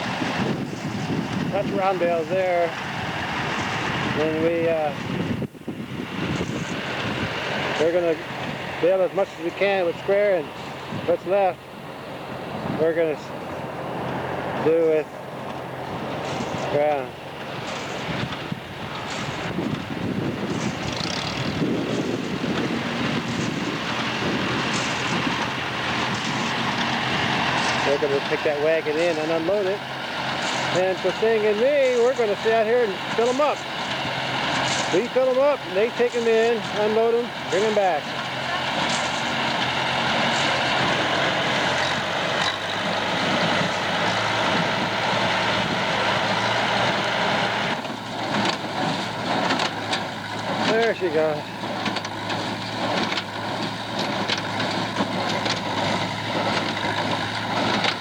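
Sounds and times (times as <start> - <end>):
wind noise on microphone: 0.0 - 8.7, 10.8 - 11.2, 17.6 - 27.9
tractor engine running: 0.0 - 58.0.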